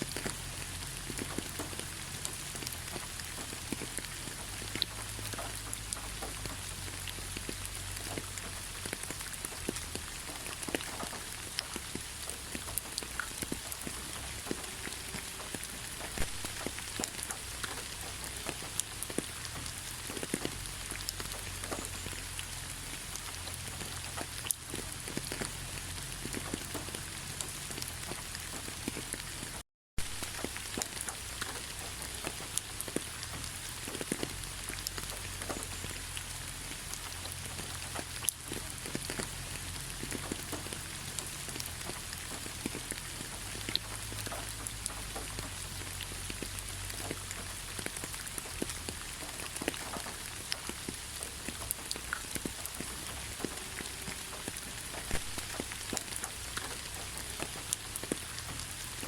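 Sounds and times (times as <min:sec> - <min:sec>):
rain falling: 0:00.0 - 0:59.0
raindrop ticks: 0:00.0 - 0:59.0.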